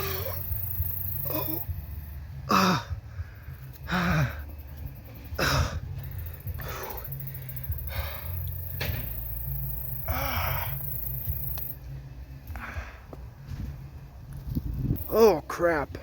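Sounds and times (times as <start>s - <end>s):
low hum: 0.0s - 15.2s
man gasping and groaning: 2.4s - 3.2s, 3.8s - 4.5s, 10.1s - 10.9s.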